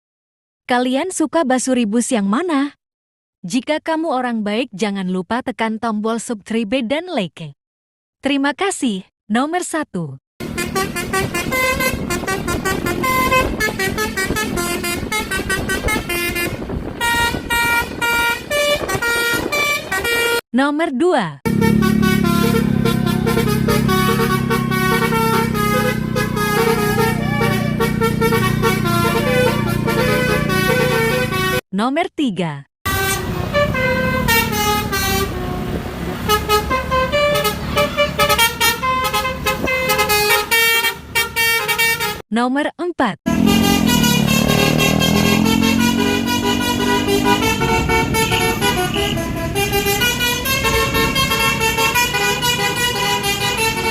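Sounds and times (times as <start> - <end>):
bus engine rumble: 10.4 - 20.4, 21.5 - 31.6, 32.9 - 42.0, 43.3 - 53.9
multi-tone bus horn melody: 10.4 - 20.4, 21.5 - 31.6, 32.9 - 42.2, 43.3 - 53.9.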